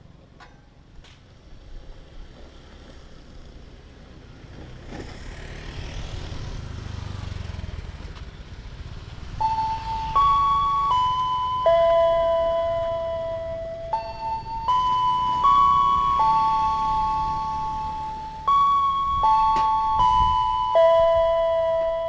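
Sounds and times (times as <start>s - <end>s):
road traffic passing: 0.0s - 22.0s
vehicle rumbling past: 1.3s - 22.0s
level crossing electronic siren: 9.4s - 22.0s.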